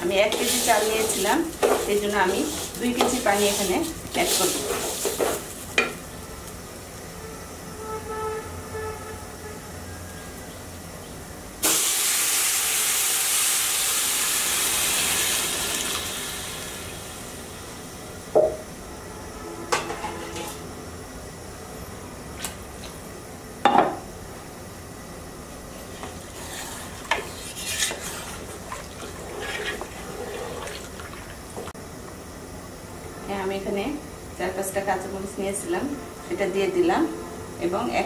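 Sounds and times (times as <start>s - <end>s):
loud sizzling hiss: 0.0s - 7.0s, 11.6s - 18.3s.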